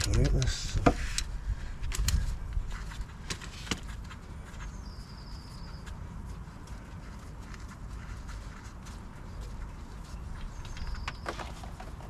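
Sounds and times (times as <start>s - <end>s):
low wind rumble: 0.0s - 12.0s.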